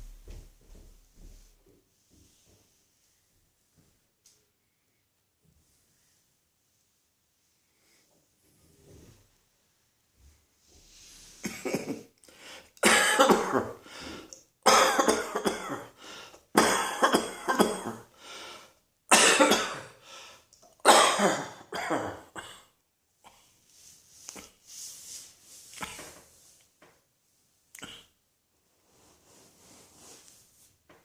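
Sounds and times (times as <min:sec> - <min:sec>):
person coughing: 0:11.4 - 0:12.1, 0:12.8 - 0:13.8, 0:14.7 - 0:16.0, 0:16.6 - 0:18.1, 0:19.1 - 0:20.0, 0:20.8 - 0:22.8.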